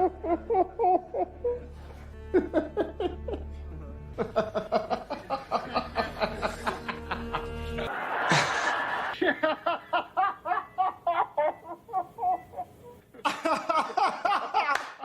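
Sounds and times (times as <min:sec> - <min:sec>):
person laughing hard: 0:00.0 - 0:01.7, 0:02.3 - 0:03.5, 0:04.2 - 0:15.0
breathy rush of noise: 0:07.8 - 0:09.2.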